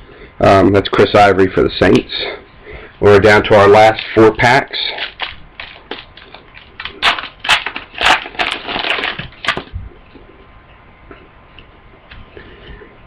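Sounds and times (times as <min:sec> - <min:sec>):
foil pack tearing and crinkling: 0:03.8 - 0:09.7.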